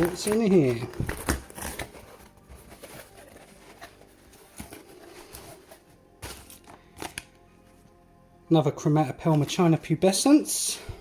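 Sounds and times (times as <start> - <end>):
hands rustling packing peanuts: 0.0 - 7.3.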